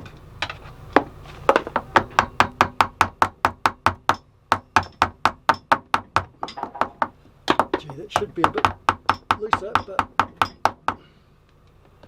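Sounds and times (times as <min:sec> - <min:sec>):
rapid even tapping on metal: 0:01.5 - 0:11.0.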